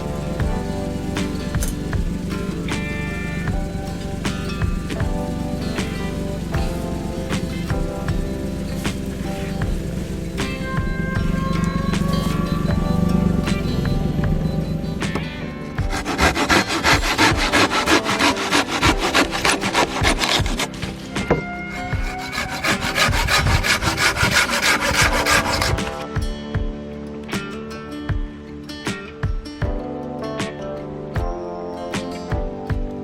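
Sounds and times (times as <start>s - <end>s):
hand saw cutting wood: 0.0s - 13.2s, 15.8s - 26.1s
held pitched notes: 0.0s - 26.4s
sharp percussive strikes: 0.0s - 26.8s.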